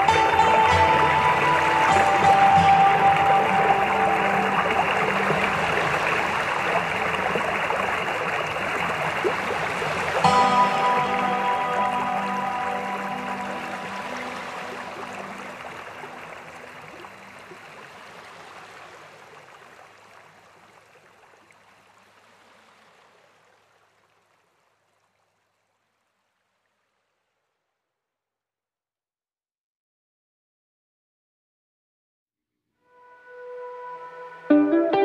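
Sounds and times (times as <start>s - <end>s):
music: 0.0s - 7.7s, 10.2s - 16.0s, 32.8s - 35.0s
rain and rushing water: 0.0s - 27.6s.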